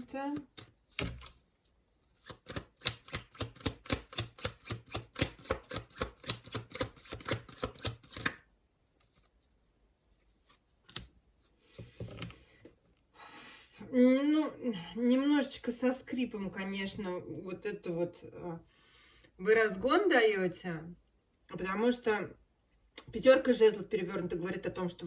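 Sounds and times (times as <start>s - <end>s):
cards being shuffled: 0.3s - 9.4s, 10.2s - 11.2s.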